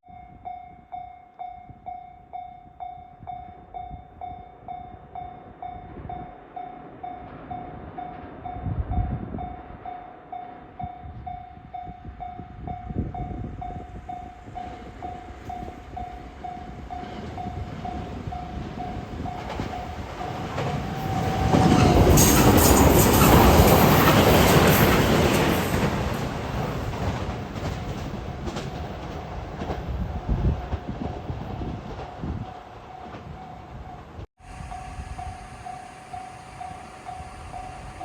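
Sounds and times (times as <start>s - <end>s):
train wheels rolling on rails: 4.7s - 38.0s
level crossing warning bell: 9.5s - 26.2s, 32.6s - 38.0s.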